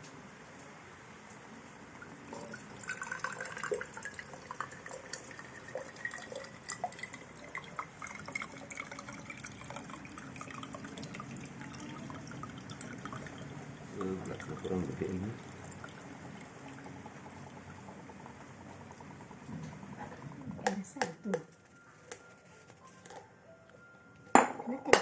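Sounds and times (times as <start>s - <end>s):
liquid dripping into container: 2.0s - 19.8s.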